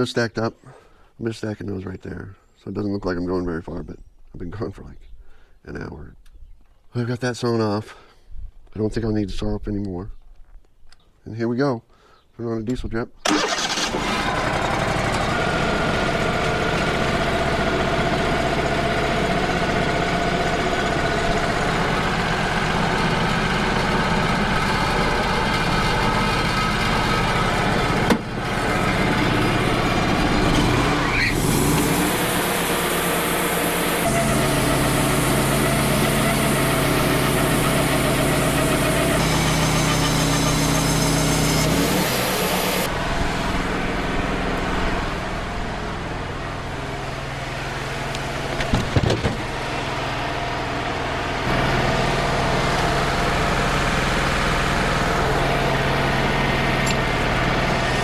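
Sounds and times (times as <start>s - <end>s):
band sawmill engine running: 12.7s - 58.0s.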